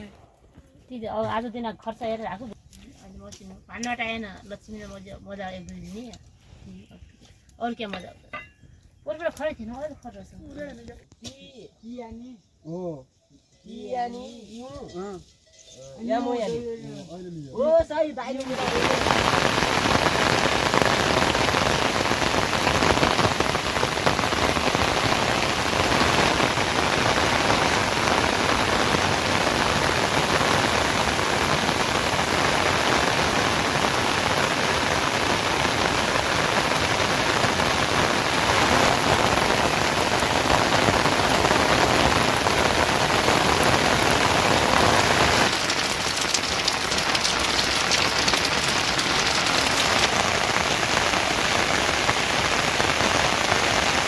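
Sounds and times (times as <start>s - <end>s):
steady rain falling: 18.4s - 54.0s.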